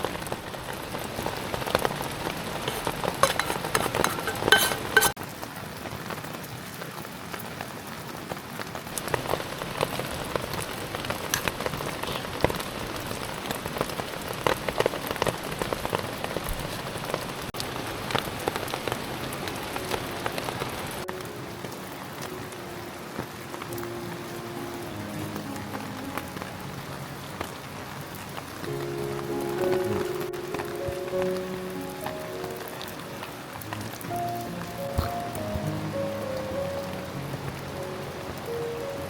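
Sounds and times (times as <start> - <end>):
raindrops tapping on a surface: 0.0 - 22.4, 27.3 - 36.0
steady rain: 0.0 - 39.0.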